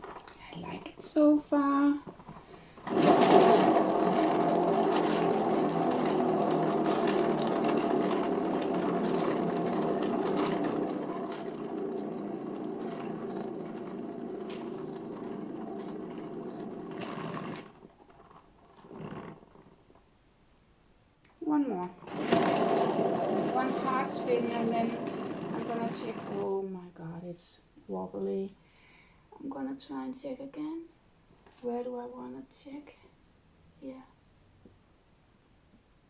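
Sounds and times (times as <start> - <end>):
spinner rattling whir: 2.0 - 19.8, 22.0 - 26.6.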